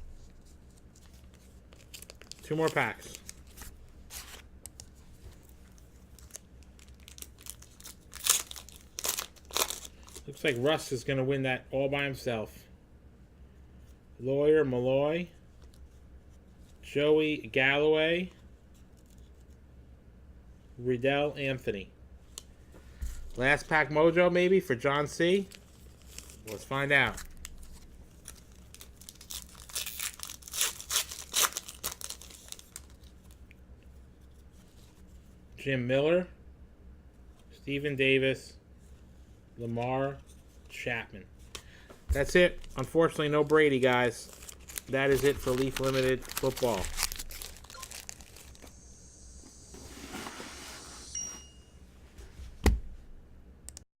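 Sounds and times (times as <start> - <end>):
card pack wrapper tearing and crinkling: 0.7 - 10.4, 25.5 - 33.4, 42.4 - 48.7
thin high tone: 47.7 - 51.9
rustling on a tabletop: 49.7 - 51.4.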